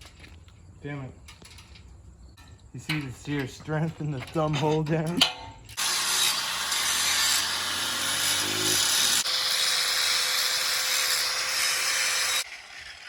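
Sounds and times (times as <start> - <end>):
power tool motor whine: 5.8 - 13.0.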